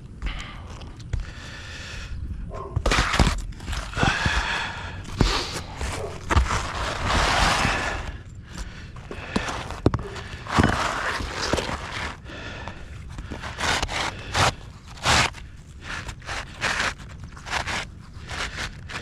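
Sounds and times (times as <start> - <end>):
rough scraping and rustling: 2.8 - 19.0.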